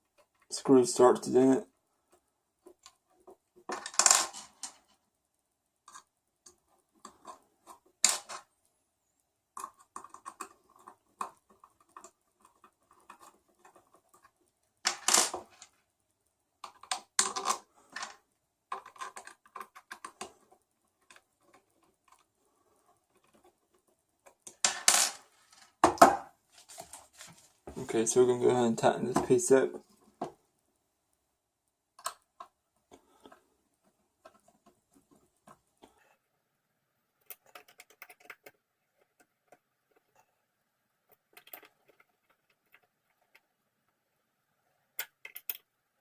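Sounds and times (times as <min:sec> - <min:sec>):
screws and plastic parts clicking: 0:16.6 - 0:22.3, 0:37.2 - 0:40.2, 0:44.9 - 0:45.7.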